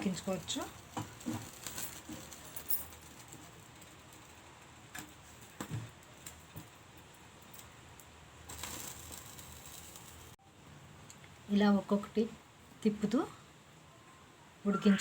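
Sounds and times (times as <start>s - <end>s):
vegetables clicking on metal grill: 0.0s - 10.4s.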